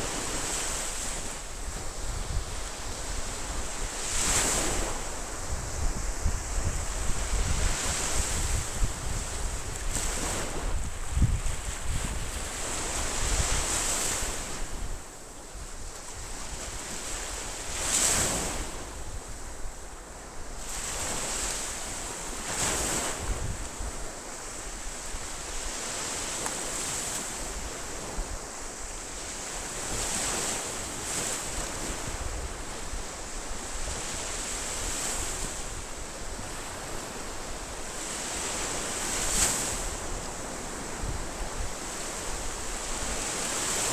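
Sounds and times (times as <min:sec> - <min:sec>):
ocean waves breaking on shore: 0:00.0 - 0:43.9
wind buffeting microphone: 0:01.6 - 0:15.0.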